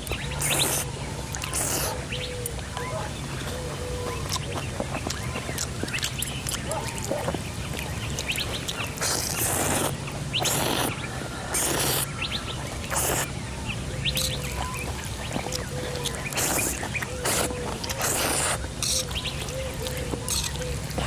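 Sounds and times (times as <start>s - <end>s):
birds chirping: 0.0s - 21.0s
loud hissing bursts: 0.4s - 0.9s, 1.5s - 2.0s, 9.0s - 12.1s, 12.9s - 13.3s, 16.2s - 18.7s.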